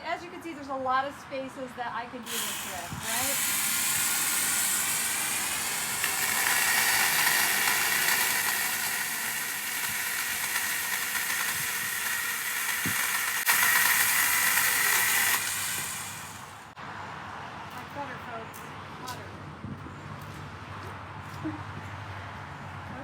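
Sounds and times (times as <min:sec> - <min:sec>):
mini chainsaw whining: 0:02.2 - 0:16.8.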